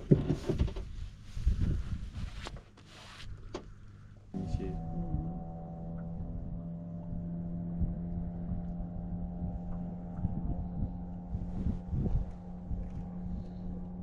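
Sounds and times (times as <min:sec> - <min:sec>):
steady mechanical hum: 0:00.8 - 0:14.0
low uneven rumbling: 0:03.3 - 0:14.0.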